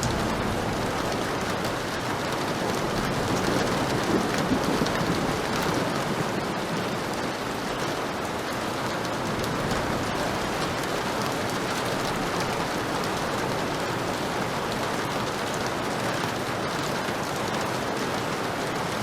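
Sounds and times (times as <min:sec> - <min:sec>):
thunder rumble: 0:00.0 - 0:07.1, 0:09.2 - 0:14.6
heavy rain hissing: 0:00.0 - 0:19.0.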